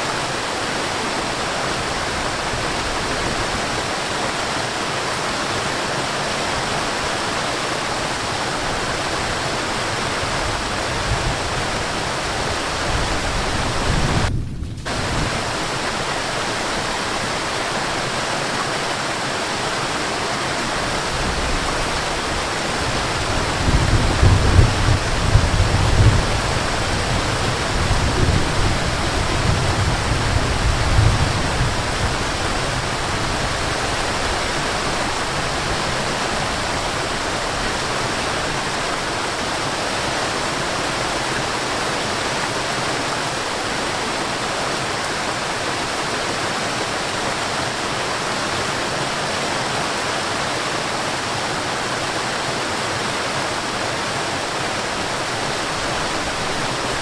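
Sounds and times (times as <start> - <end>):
waterfall rushing: 0.0 - 57.0
deep rumbling: 12.8 - 15.6.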